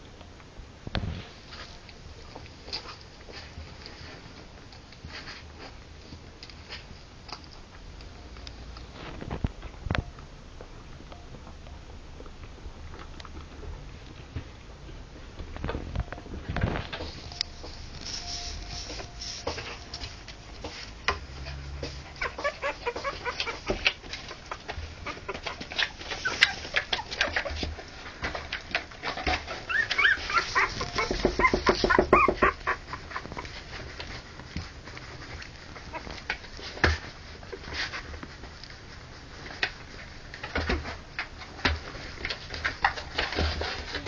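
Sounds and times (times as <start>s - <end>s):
puppies whining and yipping: 21.5s - 27.7s, 29.1s - 33.7s, 35.7s - 36.3s.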